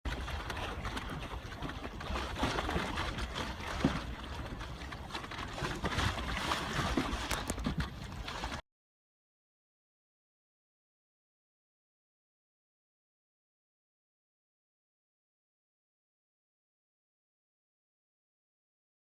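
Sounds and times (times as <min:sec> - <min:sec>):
water lapping around canoe: 0:00.1 - 0:08.6
wind rumbling on microphone: 0:00.1 - 0:08.6.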